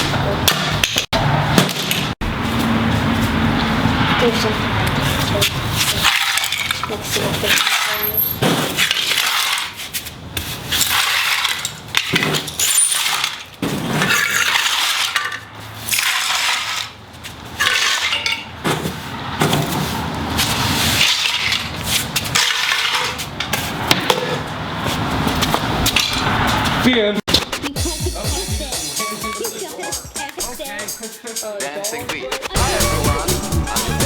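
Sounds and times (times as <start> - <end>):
loose pieces clinking: 10.8 - 16.9.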